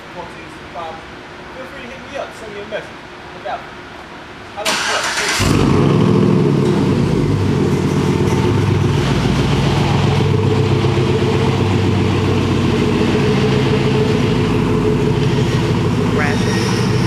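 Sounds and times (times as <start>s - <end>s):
engine idling: 4.7s - 17.0s.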